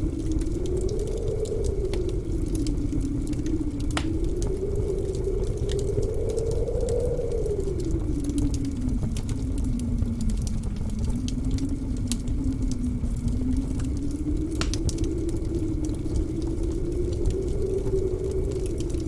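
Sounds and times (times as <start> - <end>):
blizzard wind howling: 0.0 - 19.0
wood fire crackling and popping: 0.0 - 19.0.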